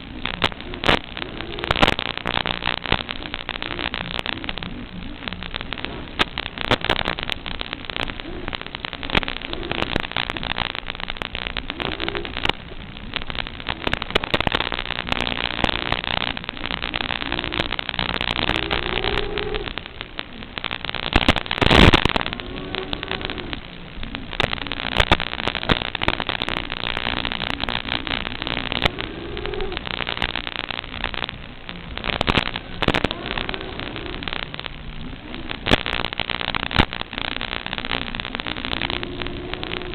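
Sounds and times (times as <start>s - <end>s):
crackling radio static: 0.0s - 39.9s.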